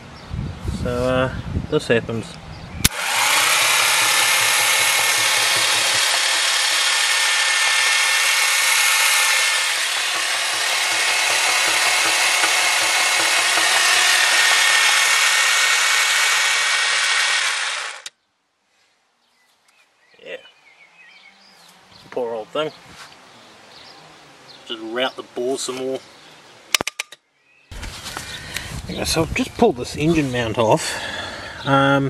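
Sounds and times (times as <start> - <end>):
car starter motor grinding whir: 2.8 - 18.1.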